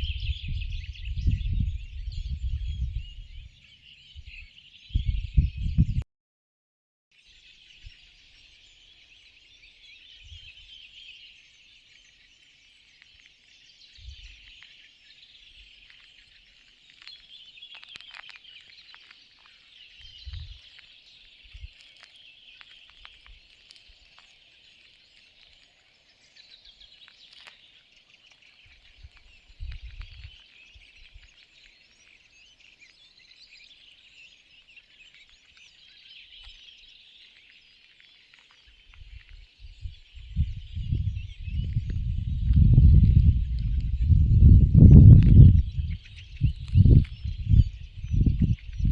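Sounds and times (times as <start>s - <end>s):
small birds chirping: 0.0s - 6.0s, 7.1s - 48.9s.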